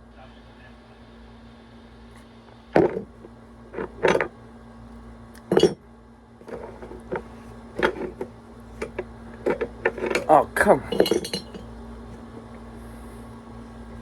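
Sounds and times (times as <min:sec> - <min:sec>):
steady faint hum: 0:00.0 - 0:14.0
kitchenware knocking and clattering: 0:03.8 - 0:04.3, 0:05.5 - 0:05.8, 0:10.9 - 0:11.7
light clinks: 0:07.8 - 0:11.8.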